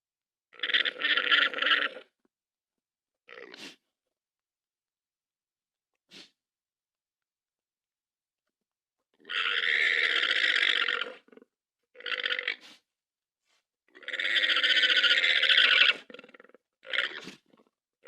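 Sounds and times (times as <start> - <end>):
creature calls: 0.5 - 2.1, 9.2 - 12.8, 13.9 - 17.5.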